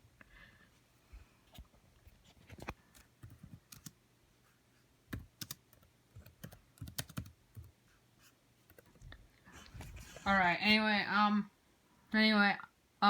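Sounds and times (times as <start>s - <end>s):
faint keyboard typing: 1.5s - 4.0s, 5.1s - 10.3s.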